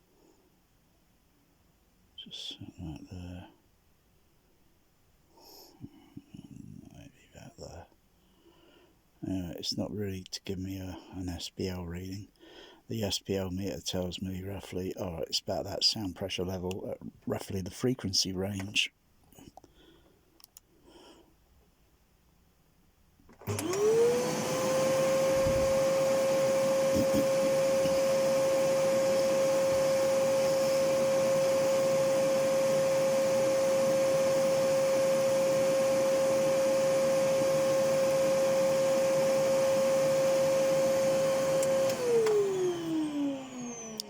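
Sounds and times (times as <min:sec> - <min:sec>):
vacuum cleaner motor whine: 0:23.4 - 0:44.0.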